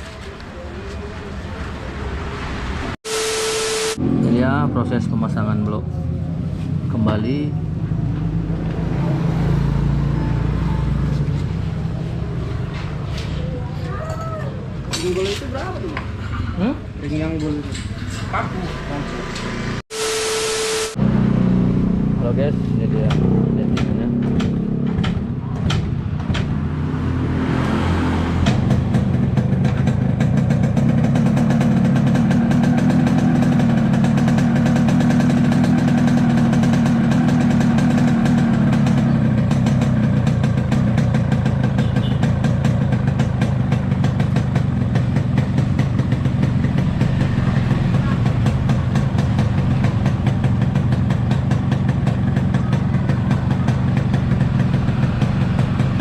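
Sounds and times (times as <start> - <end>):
two-stroke engine running: 28.4 - 56.0.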